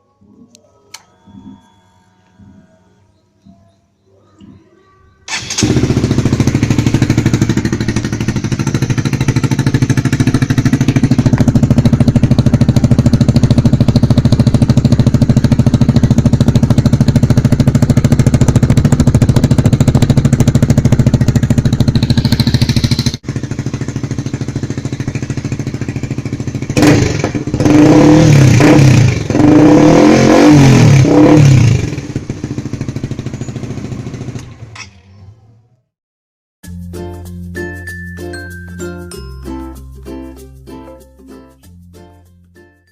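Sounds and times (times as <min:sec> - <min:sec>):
motorcycle engine revving: 0:05.3 - 0:35.4.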